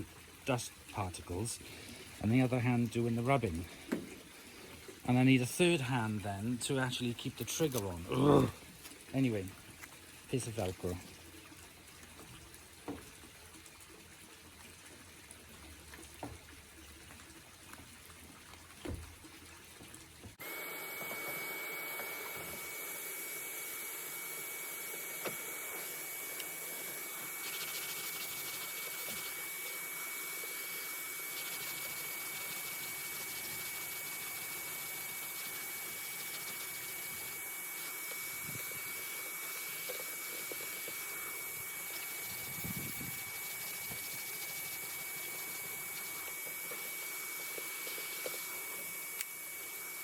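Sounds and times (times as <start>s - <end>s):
vacuum cleaner whining: 20.4s - 50.0s.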